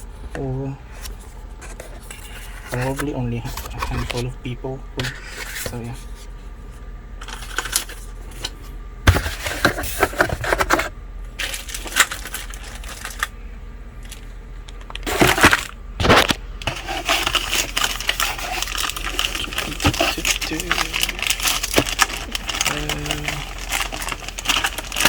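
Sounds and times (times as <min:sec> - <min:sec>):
packaging crinkling: 0:07.2 - 0:08.5, 0:09.2 - 0:13.4, 0:14.0 - 0:25.0
packaging rustling: 0:07.2 - 0:08.5, 0:09.1 - 0:13.4, 0:14.0 - 0:25.0.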